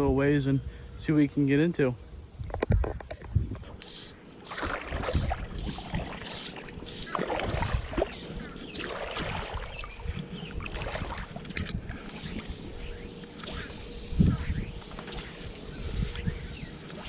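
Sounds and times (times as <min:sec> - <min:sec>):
wading through shallow water: 0:03.6 - 0:17.0.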